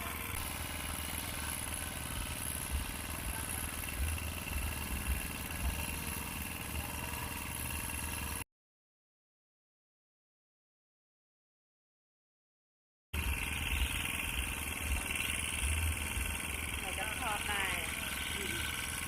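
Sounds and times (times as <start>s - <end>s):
motorbike engines running: 0.0s - 8.4s, 13.2s - 19.0s.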